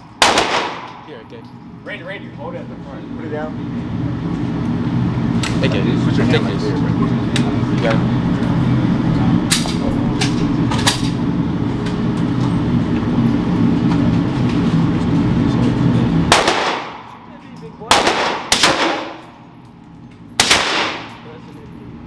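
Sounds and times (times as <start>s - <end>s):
low hum: 0.0s - 22.0s
faint gunshots: 0.2s - 1.1s, 16.3s - 17.1s, 17.9s - 19.2s, 20.4s - 21.1s
loud gunshots with echo: 0.2s - 1.1s, 16.3s - 17.1s, 17.9s - 19.4s, 20.4s - 21.1s.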